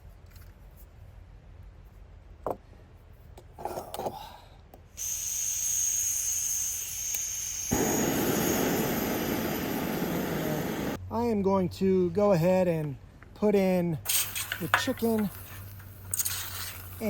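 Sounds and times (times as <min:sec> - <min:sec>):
burner lighting click: 0:05.0 - 0:11.0
gas burner rushing: 0:05.0 - 0:11.0
gas valve hissing: 0:05.0 - 0:11.0.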